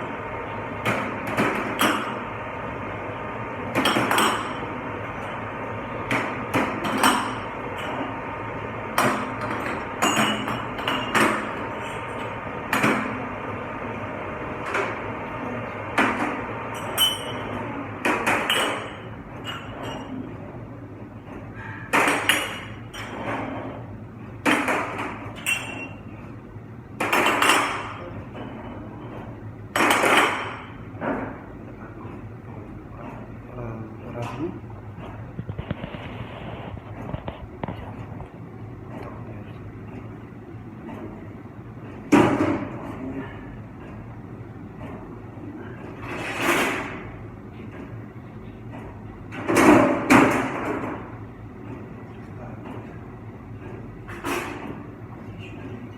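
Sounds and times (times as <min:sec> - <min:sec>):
steady low hum: 0:00.0 - 0:55.9.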